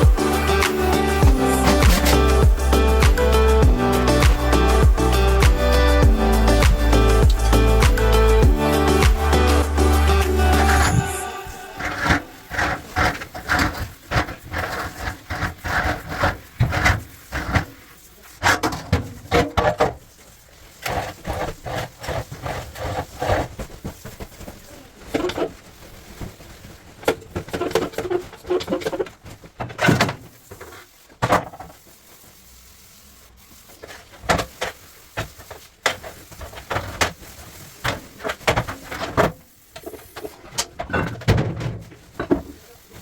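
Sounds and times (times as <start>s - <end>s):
scraping: 0.0s - 17.8s.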